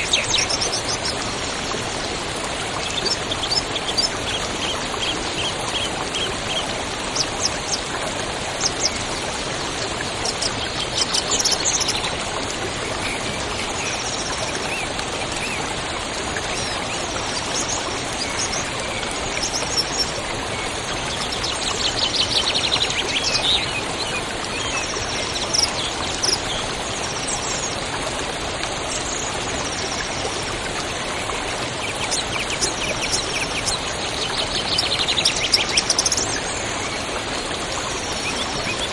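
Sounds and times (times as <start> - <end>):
river water rushing: 0.0 - 38.9.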